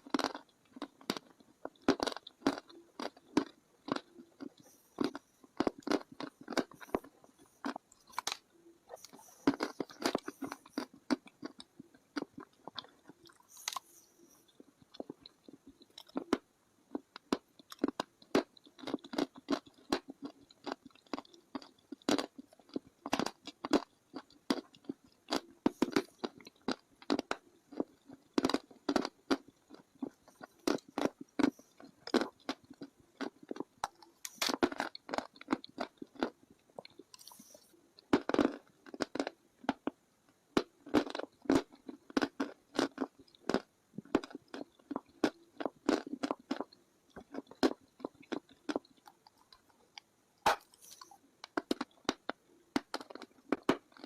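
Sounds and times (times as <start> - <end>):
crunching brittle chalk in mouth: 0.0 - 39.9.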